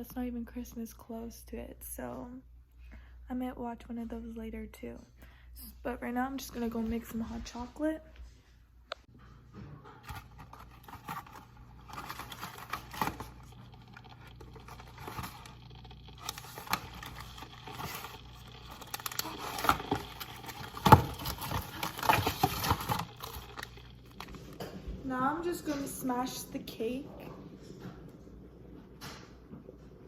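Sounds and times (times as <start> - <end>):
kitchen items clicking and scraping: 9.6 - 24.8.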